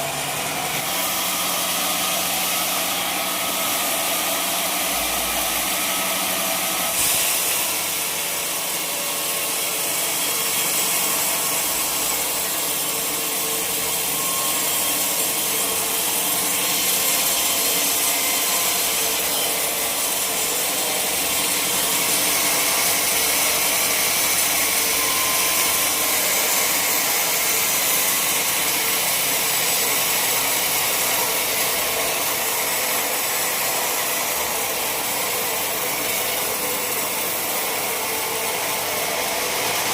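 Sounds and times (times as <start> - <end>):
saw cutting through log: 0.0 - 39.9.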